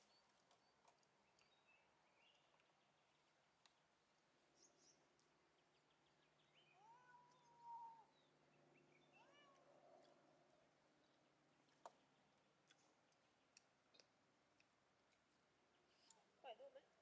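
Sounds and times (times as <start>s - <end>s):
faint high chirps: 4.5s - 10.2s
kitten meowing: 6.8s - 8.1s, 9.2s - 9.6s.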